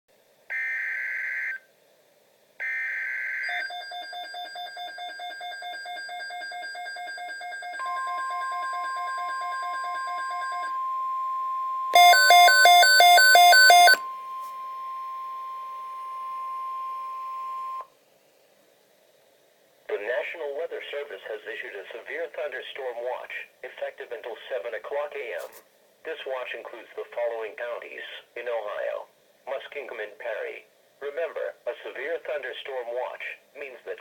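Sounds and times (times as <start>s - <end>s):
steady warning alarm tone: 2.6s - 17.8s
warbling electronic alarm: 2.6s - 17.8s
rapid electronic beeping: 12.0s - 14.0s.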